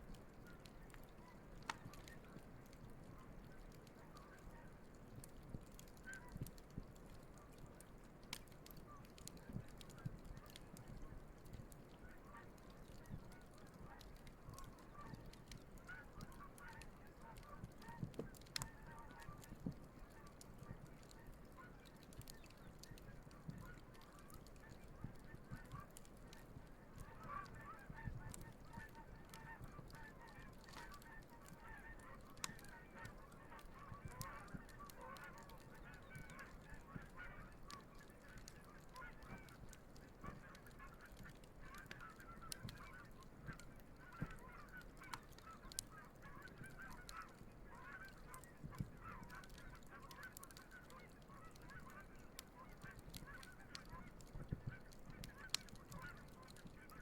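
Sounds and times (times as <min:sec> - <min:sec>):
campfire crackling: 0:00.0 - 0:57.0
geese honking: 0:14.6 - 0:19.5, 0:23.3 - 0:57.0.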